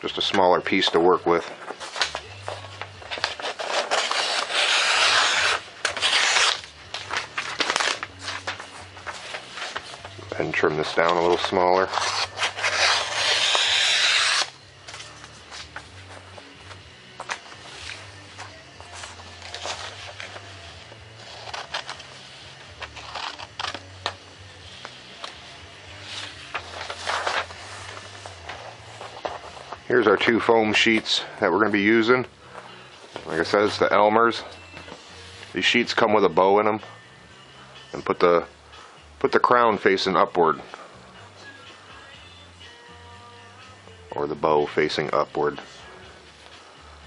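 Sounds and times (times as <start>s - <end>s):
foam board rubbing and scraping: 3.2s - 6.7s, 11.8s - 14.5s.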